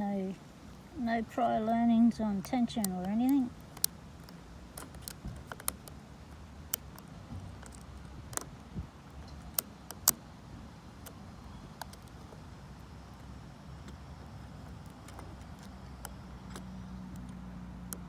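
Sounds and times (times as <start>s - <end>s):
lock picking metallic clicks: 2.4s - 10.3s, 11.0s - 12.4s, 14.6s - 18.0s
wind rumble on microphone: 7.2s - 9.0s.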